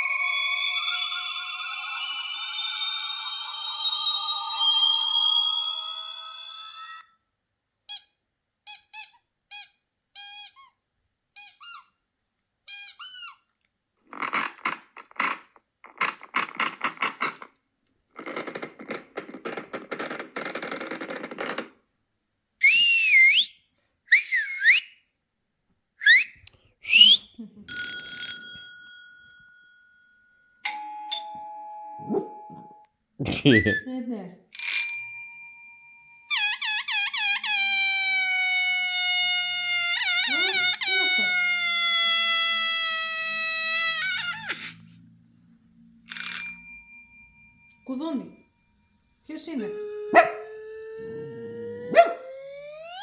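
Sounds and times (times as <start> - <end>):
long steady beeps: 0.0 - 7.0
swooping whistle glides: 0.0 - 7.1, 22.6 - 25.0, 26.0 - 27.3.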